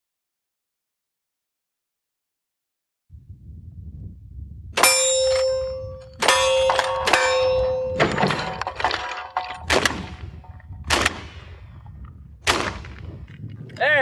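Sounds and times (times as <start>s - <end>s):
steel target clanging: 4.8s - 10.6s
rifle shots: 9.6s - 10.2s, 10.9s - 11.6s, 12.4s - 13.0s
sharp gunshot reports: 12.4s - 13.0s.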